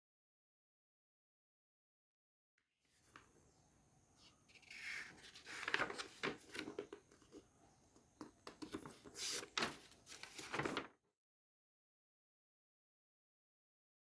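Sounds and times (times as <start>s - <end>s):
handling rustling and scraping: 4.2s - 7.5s, 8.2s - 10.9s.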